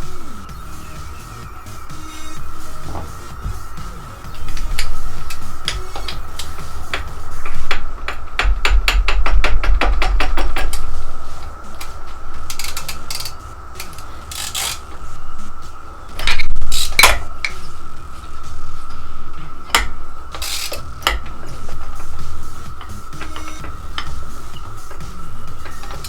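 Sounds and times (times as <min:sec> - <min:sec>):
metal clanks and knocks: 0:02.3 - 0:15.1, 0:18.4 - 0:26.0
tool clicks: 0:02.3 - 0:15.1, 0:16.1 - 0:17.7, 0:19.6 - 0:26.0.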